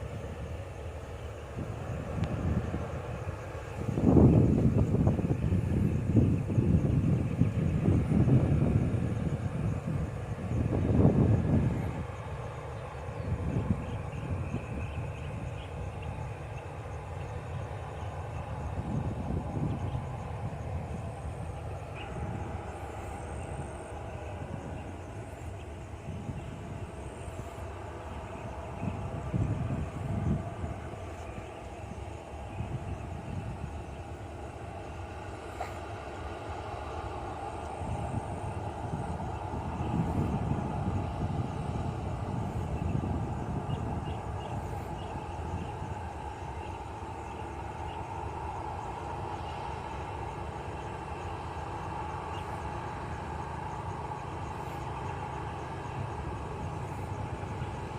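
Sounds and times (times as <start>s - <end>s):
jet engines rumbling: 0.0s - 57.9s.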